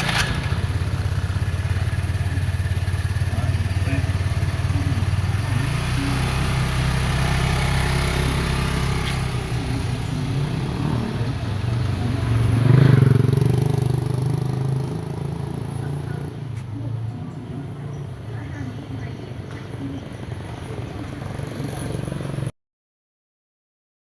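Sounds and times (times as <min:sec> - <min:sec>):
brush cutter engine running: 0:00.0 - 0:12.2.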